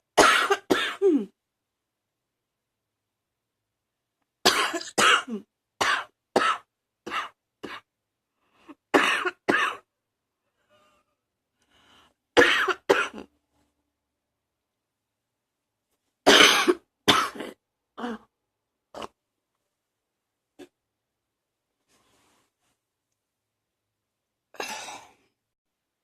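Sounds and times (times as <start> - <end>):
person coughing: 0.2 - 1.4, 4.5 - 7.9, 8.8 - 9.9, 12.4 - 13.3, 16.3 - 18.3, 24.6 - 25.2
faint breaths: 10.5 - 12.3.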